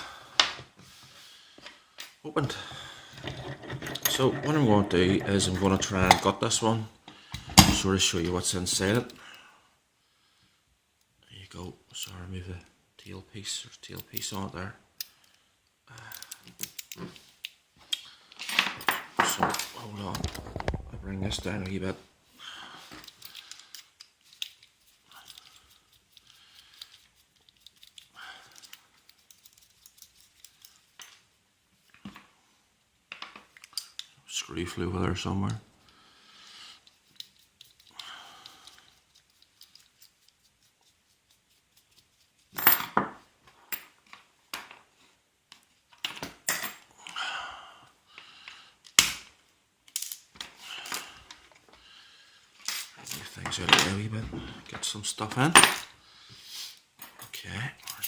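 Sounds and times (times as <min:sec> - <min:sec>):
metal tools clattering on surface: 0:03.2 - 0:06.3, 0:18.4 - 0:20.8, 0:42.6 - 0:43.1, 0:46.1 - 0:46.9.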